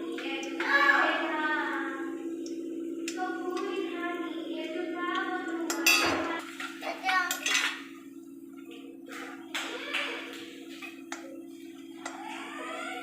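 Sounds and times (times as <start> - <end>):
steady low hum: 0.0 - 13.0
metal utensils and dishes clattering: 5.8 - 7.8.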